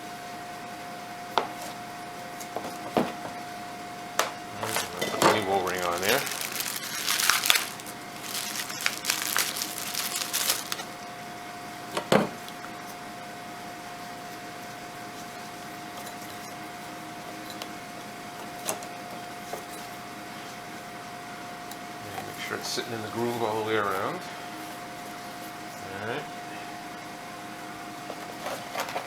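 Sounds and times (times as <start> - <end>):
faint steady hum: 0.0 - 29.0
hands rustling: 4.6 - 11.0.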